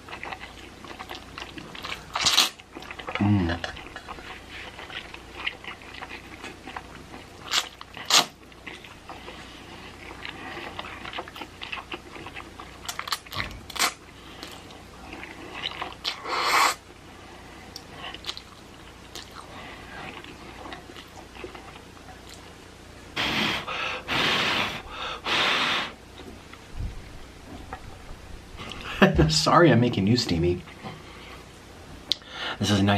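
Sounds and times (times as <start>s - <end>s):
chewing noodles: 0.0s - 22.6s.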